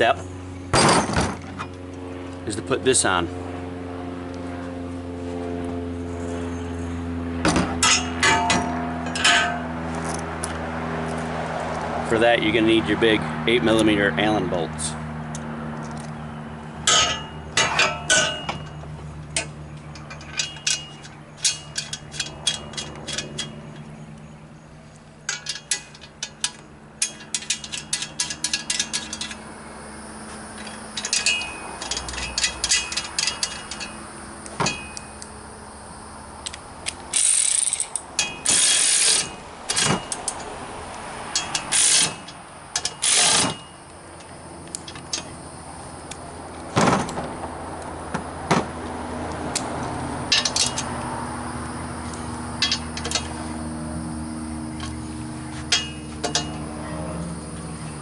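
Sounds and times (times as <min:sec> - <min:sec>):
ratchet wrench clicking: 0:25.3 - 0:29.4, 0:30.6 - 0:34.0, 0:36.4 - 0:40.5, 0:41.3 - 0:43.7.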